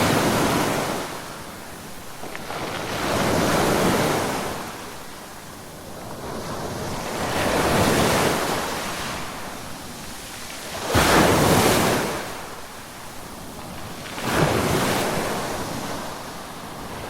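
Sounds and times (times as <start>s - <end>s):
ocean waves breaking: 0.0s - 12.6s.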